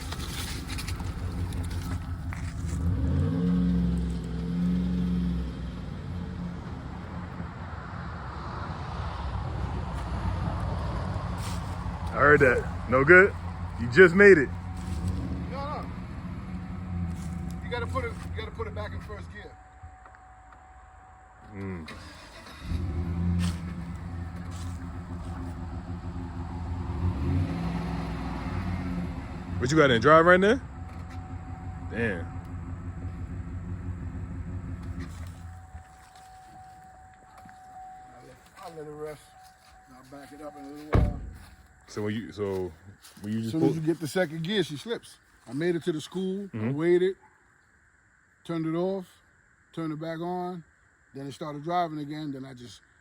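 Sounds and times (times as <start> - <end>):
van engine revving: 0.0 - 19.5, 21.5 - 35.8.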